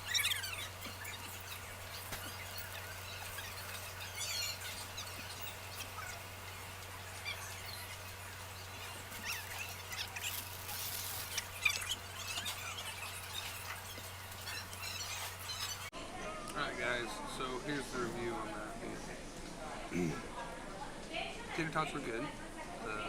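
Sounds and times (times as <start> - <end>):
small birds chirping: 0.0 - 15.9.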